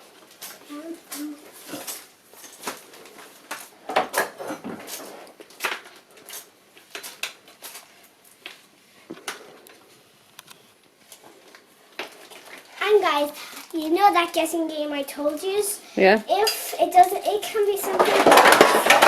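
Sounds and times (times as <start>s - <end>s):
hard toy parts clicking: 17.8s - 19.0s.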